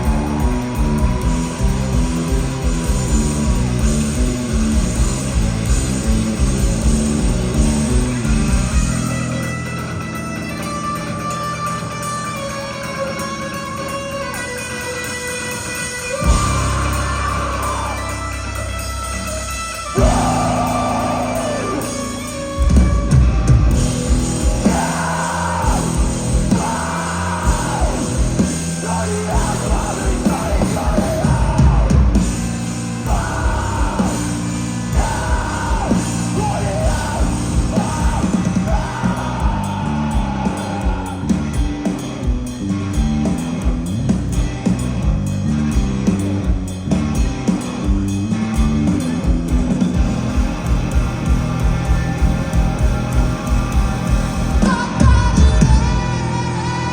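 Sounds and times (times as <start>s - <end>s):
heavy drums: 0.0s - 56.9s
rock band playing live: 0.0s - 56.9s
person singing: 24.6s - 32.0s, 33.1s - 41.4s, 54.5s - 56.9s.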